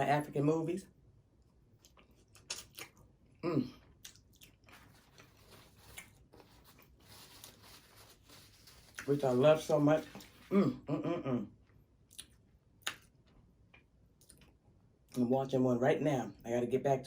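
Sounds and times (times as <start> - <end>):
biting and chewing food: 1.7 - 3.2, 3.8 - 9.2.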